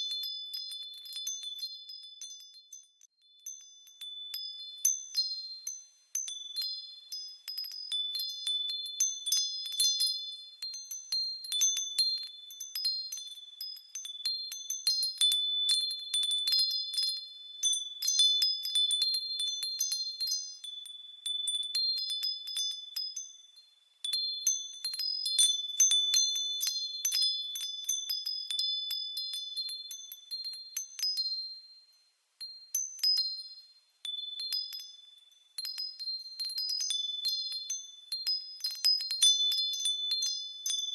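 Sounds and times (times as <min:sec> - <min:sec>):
wind chimes ringing: 0:00.0 - 0:40.9.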